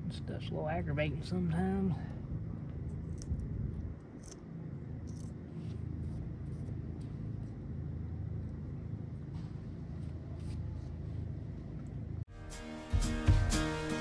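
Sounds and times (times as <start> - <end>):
wind rumbling on microphone: 2.0 - 4.7.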